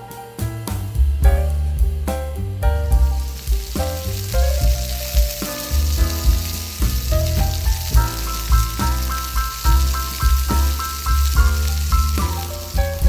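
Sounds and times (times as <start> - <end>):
music with piano and bass: 0.0 - 13.0
food sizzling in a pan: 3.0 - 13.0.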